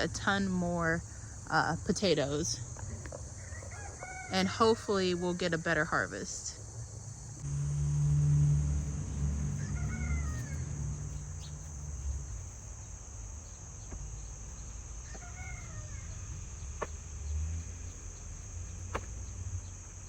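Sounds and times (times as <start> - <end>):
insects buzzing: 0.0 - 20.0
chicken calling: 3.3 - 5.7, 9.1 - 11.8, 15.0 - 16.3
low rumble: 7.4 - 12.6.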